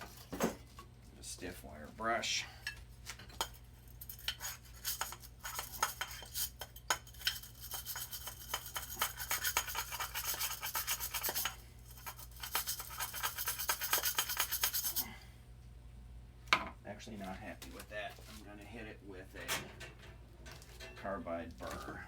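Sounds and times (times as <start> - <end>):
wire brush scrubbing brass: 3.4 - 15.1.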